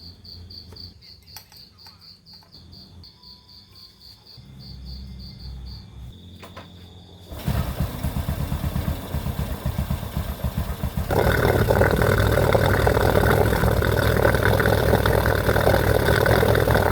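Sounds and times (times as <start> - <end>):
motorcycle engine starting and idling: 6.4 - 16.9.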